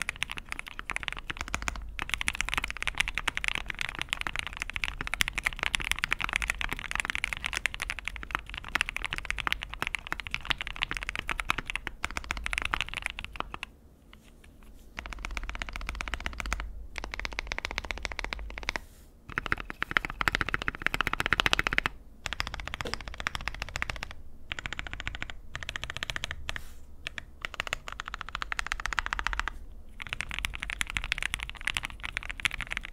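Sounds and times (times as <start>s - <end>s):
mechanical keyboard typing: 0.0s - 13.7s, 15.0s - 32.9s.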